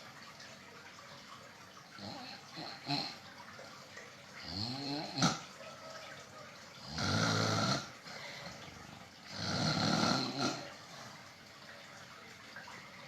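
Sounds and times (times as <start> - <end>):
loud rattling snores: 2.0 - 3.2, 4.4 - 5.4, 6.8 - 8.0, 9.3 - 10.8.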